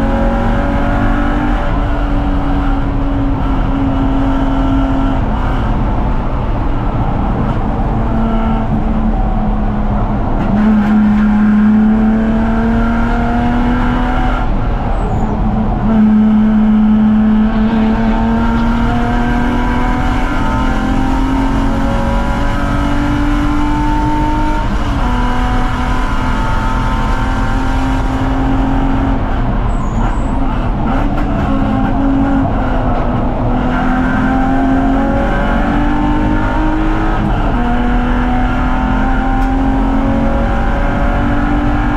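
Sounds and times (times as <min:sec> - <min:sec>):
car engine revving: 0:00.0 - 0:41.9
road and wind noise: 0:00.0 - 0:41.9.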